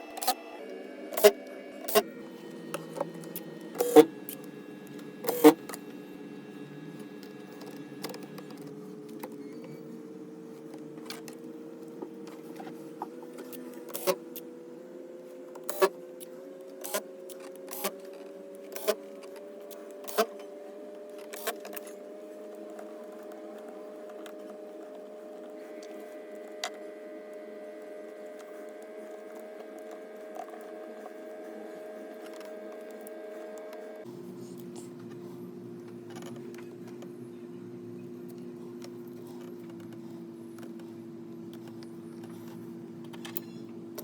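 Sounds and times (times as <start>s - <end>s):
clicks of tools and plastic parts: 38.3s - 44.0s.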